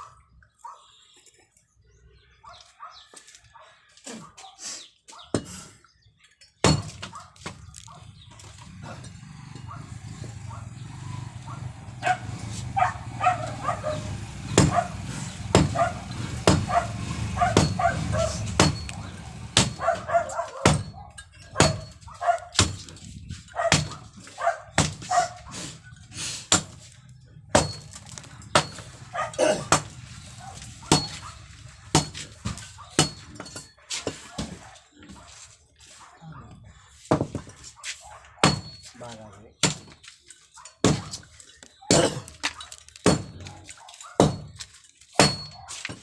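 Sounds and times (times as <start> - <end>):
hammer striking concrete: 5.4 - 5.7, 6.6 - 7.7, 13.4 - 23.1, 23.7 - 25.4, 26.5 - 34.6, 37.1 - 37.6, 38.4 - 40.0, 40.8 - 41.3, 41.9 - 46.0
low steady rumble: 8.1 - 22.0.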